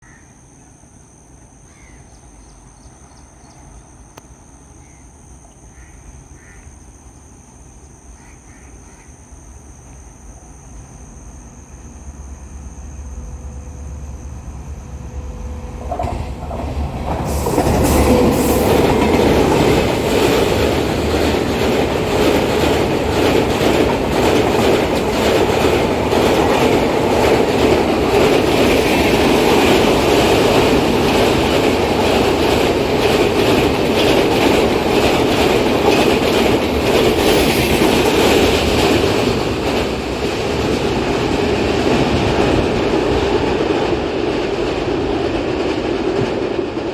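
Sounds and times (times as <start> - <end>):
train wheels rumbling on bridge: 9.2 - 46.9
rail clatter: 11.2 - 46.9.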